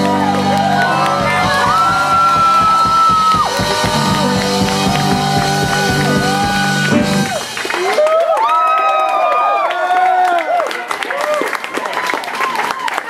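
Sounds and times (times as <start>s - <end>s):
amplified guitar: 0.0s - 7.7s
fast drum beat: 0.0s - 8.2s
crowd yelling: 0.0s - 13.0s.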